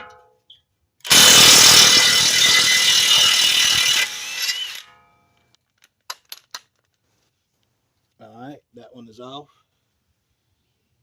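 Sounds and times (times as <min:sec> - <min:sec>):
impact wrench rattling: 0:01.0 - 0:05.0.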